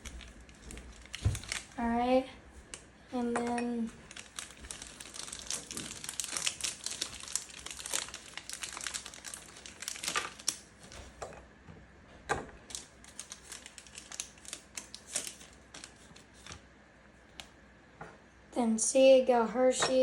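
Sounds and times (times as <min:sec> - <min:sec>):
foil wrapper crinkling: 0:00.0 - 0:02.0, 0:03.9 - 0:11.1, 0:12.6 - 0:16.6.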